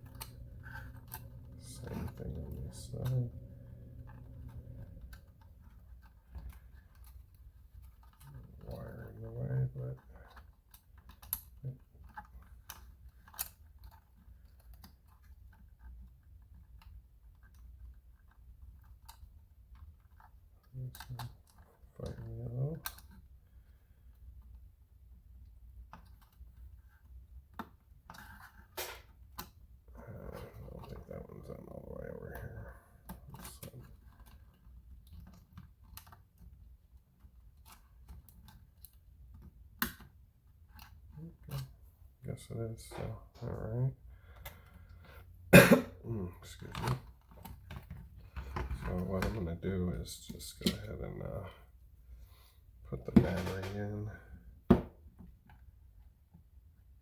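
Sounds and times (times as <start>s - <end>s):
low steady hum: 0.0s - 57.0s
small clicks and taps on plastic: 33.1s - 41.7s.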